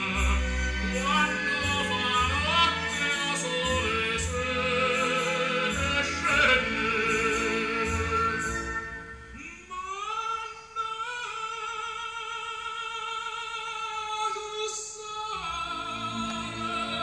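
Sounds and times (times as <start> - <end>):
person singing opera: 0.0 - 8.6, 9.3 - 17.0
orchestral accompaniment: 0.0 - 9.4, 15.4 - 17.0.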